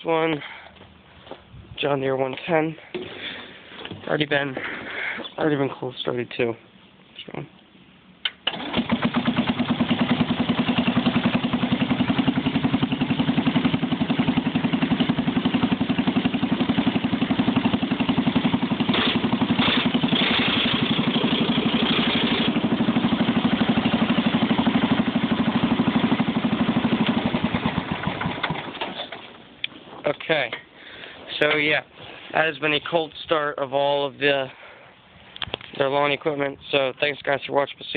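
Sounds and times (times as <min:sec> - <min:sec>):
lawn tractor engine running: 0:08.2 - 0:29.6.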